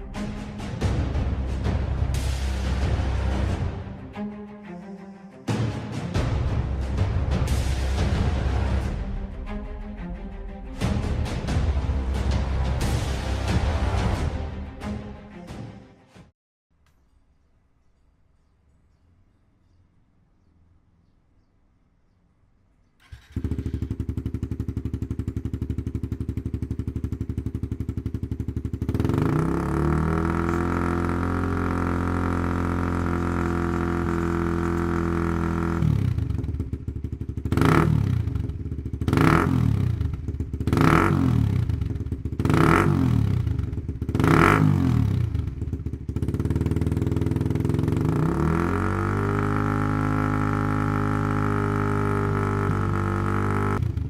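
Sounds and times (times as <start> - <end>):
motorcycle engine idling and revving: 0.8 - 3.8, 11.2 - 14.3, 23.0 - 54.0.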